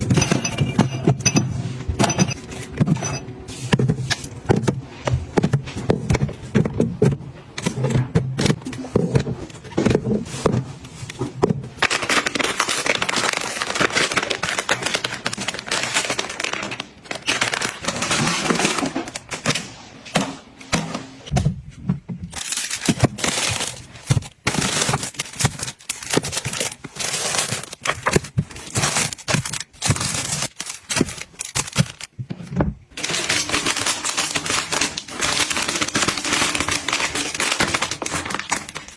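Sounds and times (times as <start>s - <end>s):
plastic packaging crinkling: 11.7s - 19.6s, 22.4s - 32.2s, 33.0s - 38.9s.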